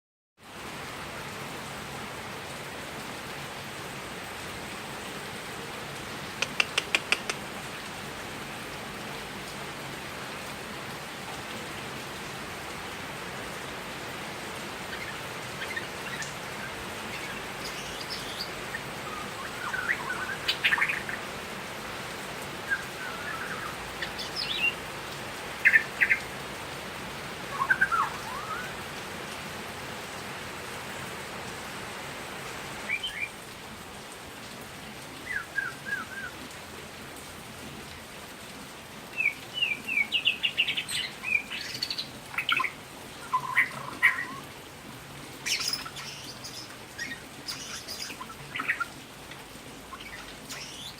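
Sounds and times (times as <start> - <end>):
sharp clicking bird notes: 6.4 - 7.4
bird singing and chirping: 14.9 - 21.2, 22.7 - 24.8, 25.6 - 26.2, 27.5 - 28.8, 32.9 - 33.3, 39.2 - 44.4, 45.5 - 48.9, 49.9 - 50.9.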